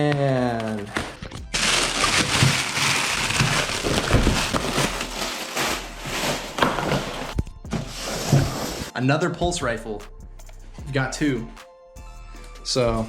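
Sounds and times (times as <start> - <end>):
packing material rustling: 0.6 - 8.9.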